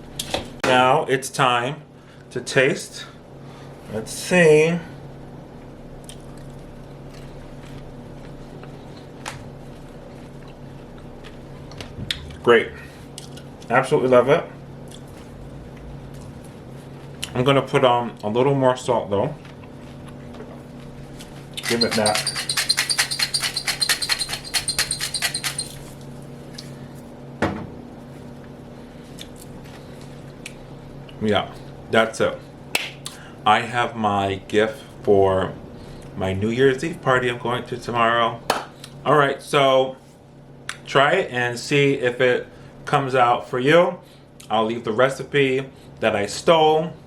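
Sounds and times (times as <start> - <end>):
steady low hum: 0.0 - 47.0
popcorn being chewed: 6.0 - 12.2.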